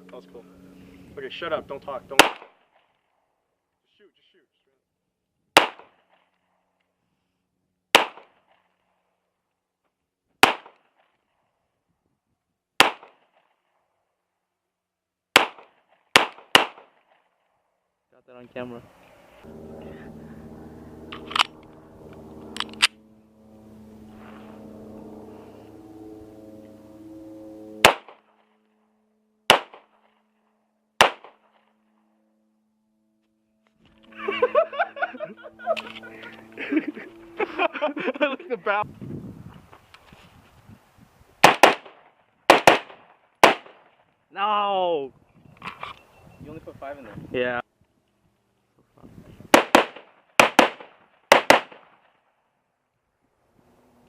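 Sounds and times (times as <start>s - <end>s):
gunshots with echo: 2.1s - 2.6s, 27.8s - 28.2s, 29.5s - 29.9s, 31.0s - 31.4s, 41.4s - 43.8s, 49.5s - 51.9s.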